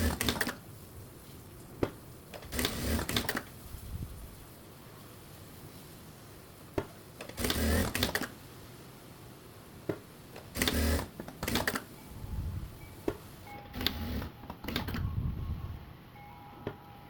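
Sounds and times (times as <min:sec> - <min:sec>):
sewing machine stitching: 0:00.0 - 0:00.6, 0:02.5 - 0:03.5, 0:07.2 - 0:08.3, 0:10.4 - 0:11.9
sharp handling clicks: 0:02.3 - 0:03.5, 0:06.8 - 0:08.4, 0:10.4 - 0:11.9.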